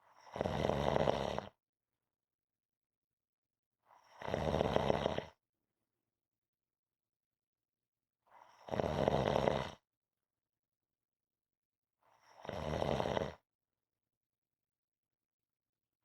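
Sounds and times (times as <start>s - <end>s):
person snoring: 0.1s - 1.6s, 4.0s - 5.4s, 8.4s - 9.8s, 12.2s - 13.4s.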